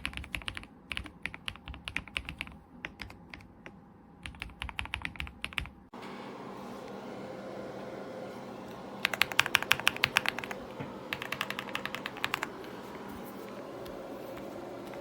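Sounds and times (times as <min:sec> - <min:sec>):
mechanical keyboard typing: 0:00.0 - 0:05.8, 0:09.0 - 0:12.8
faint hum: 0:00.0 - 0:15.0.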